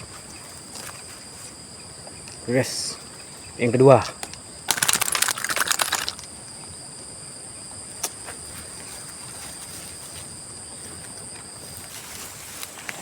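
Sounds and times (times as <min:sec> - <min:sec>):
insects chirring: 0:00.0 - 0:13.0
rapid clicking: 0:04.7 - 0:06.3.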